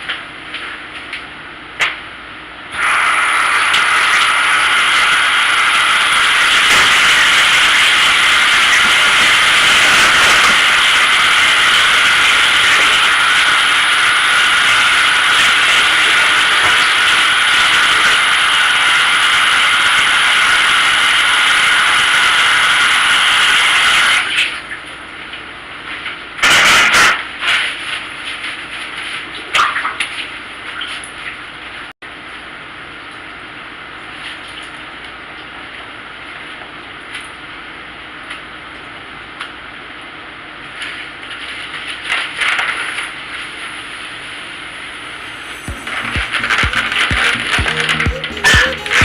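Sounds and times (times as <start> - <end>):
loud rushing hiss: 2.8 - 23.6.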